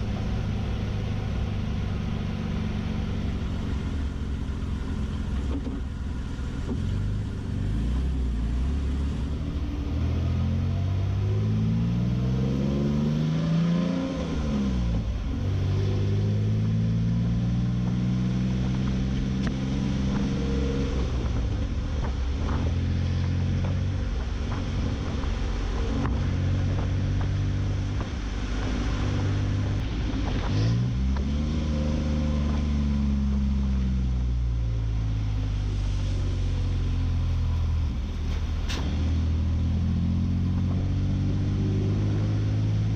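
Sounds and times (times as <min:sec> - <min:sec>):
truck engine exhaust drone: 0:00.0 - 0:13.2.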